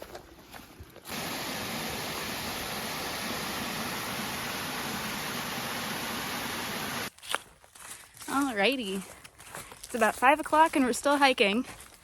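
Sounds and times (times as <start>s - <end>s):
waterfall rushing: 1.1s - 7.1s.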